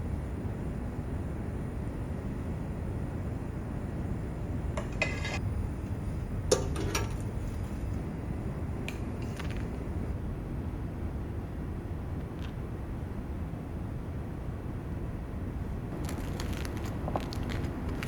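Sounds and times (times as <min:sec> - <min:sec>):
low background rumble: 0:00.0 - 0:18.0
dishes and cutlery clinking: 0:04.8 - 0:05.4.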